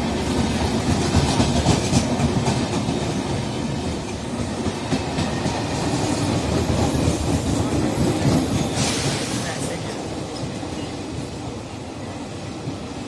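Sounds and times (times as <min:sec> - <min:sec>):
train wheels clattering over rail joints: 0:00.3 - 0:03.2.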